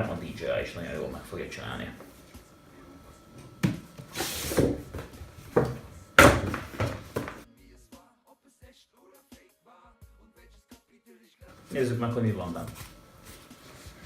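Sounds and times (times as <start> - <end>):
box lid sliding rustle: 4.0 - 5.2
knocks on box: 5.5 - 7.4.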